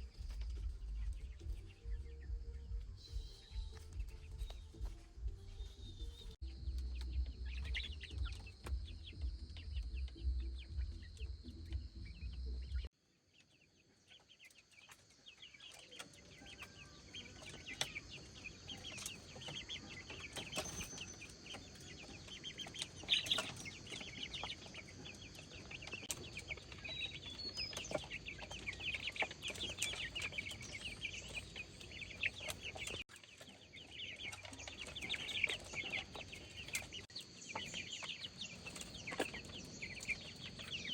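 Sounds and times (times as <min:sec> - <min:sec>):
chickens clucking: 0:00.0 - 0:12.9, 0:13.8 - 0:40.9
low rumble: 0:00.0 - 0:12.9.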